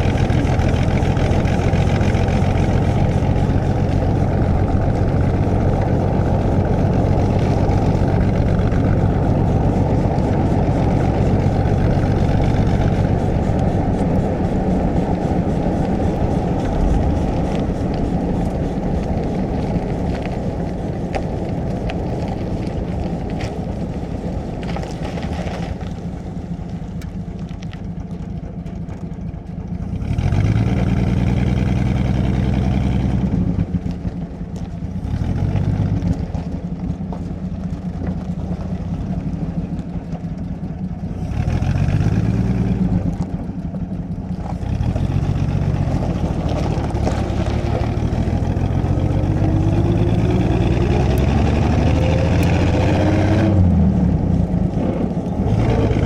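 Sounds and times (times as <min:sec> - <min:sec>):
car engine running under load: 0:00.0 - 0:56.0
road noise: 0:00.0 - 0:56.0.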